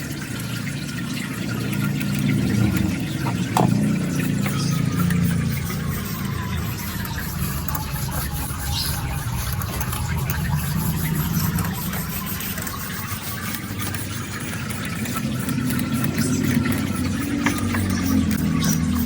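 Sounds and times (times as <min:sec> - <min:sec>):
small machine motor humming: 0:00.0 - 0:19.0.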